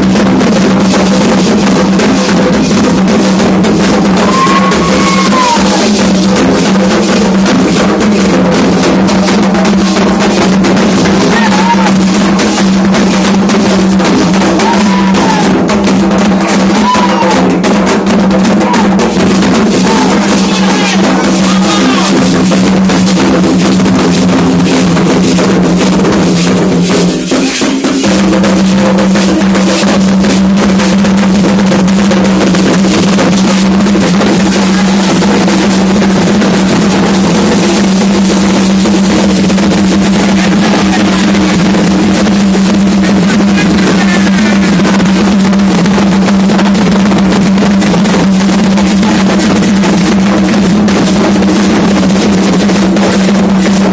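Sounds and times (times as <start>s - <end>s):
hand drums playing: 0.0s - 53.9s
voices singing: 9.9s - 13.3s, 14.5s - 15.6s, 19.7s - 22.2s, 34.2s - 44.8s.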